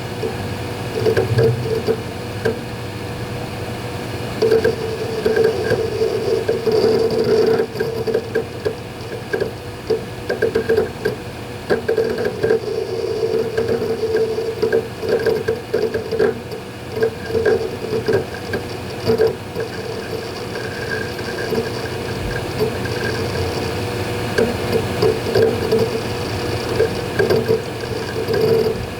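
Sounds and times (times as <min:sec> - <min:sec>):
hard drive clicks and seek noise: 0:00.0 - 0:28.9
steady hum: 0:00.0 - 0:28.9.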